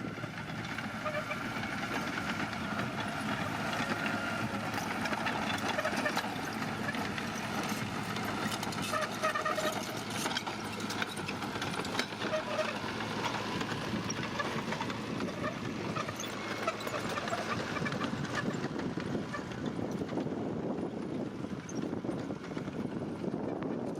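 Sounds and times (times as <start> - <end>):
bulldozer running: 0.0 - 23.9
short squeaks: 1.0 - 2.2, 3.2 - 11.4, 12.0 - 19.5.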